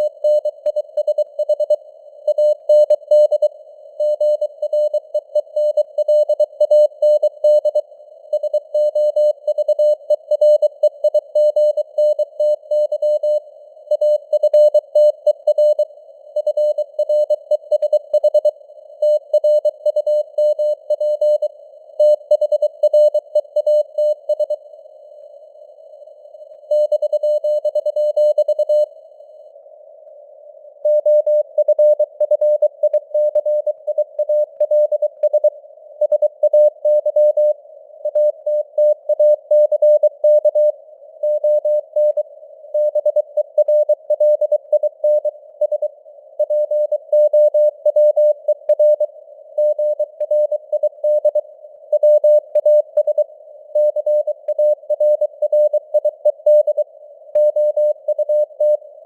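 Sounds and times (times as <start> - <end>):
morse code beeps: 53.8 - 56.8.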